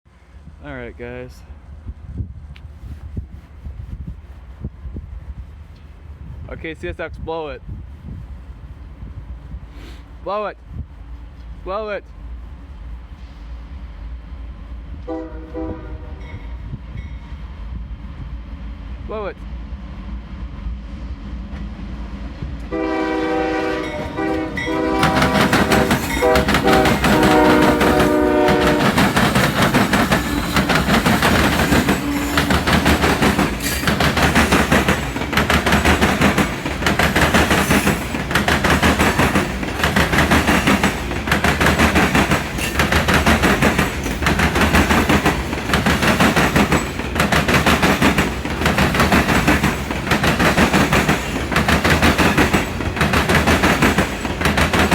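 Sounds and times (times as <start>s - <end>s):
train rumbling past: 0.1s - 54.9s
locomotive air horn: 15.1s - 16.3s, 22.7s - 29.1s
wheel clacks over rail joints: 23.9s - 54.9s.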